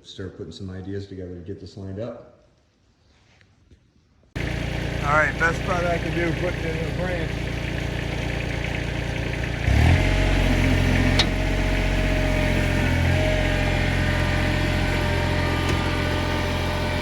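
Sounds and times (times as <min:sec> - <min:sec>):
tractor diesel engine revving: 0:04.4 - 0:17.0.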